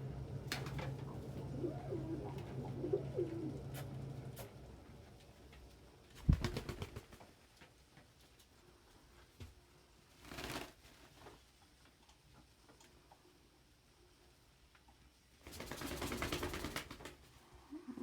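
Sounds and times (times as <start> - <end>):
steady low hum: 0.0 - 6.2
pigeons cooing: 0.3 - 4.4.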